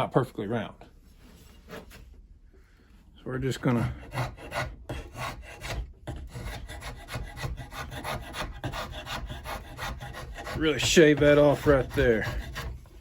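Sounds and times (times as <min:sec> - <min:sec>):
hand tool shaving wood: 0:04.0 - 0:13.0.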